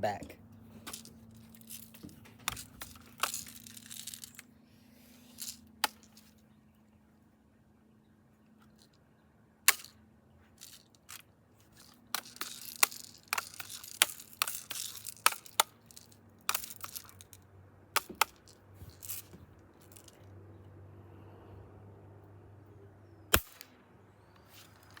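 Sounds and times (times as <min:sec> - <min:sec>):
gun clicks and rattles: 0:00.8 - 0:04.5, 0:10.6 - 0:17.4, 0:18.0 - 0:20.2
rustling: 0:24.4 - 0:25.0.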